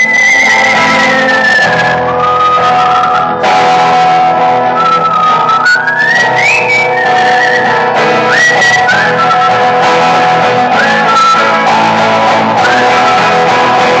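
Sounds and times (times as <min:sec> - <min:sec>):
live music with sliding melody: 0:00.0 - 0:14.0.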